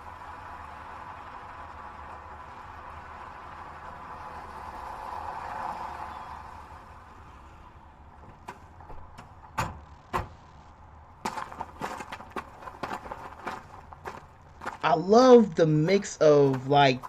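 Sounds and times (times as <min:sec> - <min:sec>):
sharp knocks and clicks: 0:08.2 - 0:10.6.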